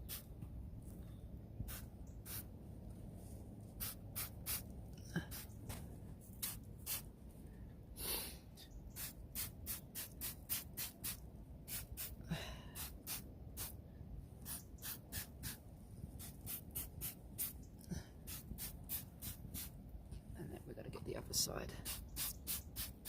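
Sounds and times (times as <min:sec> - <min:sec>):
spray bottle hissing squirts: 0:06.4 - 0:07.0, 0:09.0 - 0:12.2, 0:14.4 - 0:15.6, 0:16.2 - 0:17.6, 0:18.3 - 0:19.7, 0:21.9 - 0:23.0
person breathing: 0:07.4 - 0:08.6, 0:12.2 - 0:12.9.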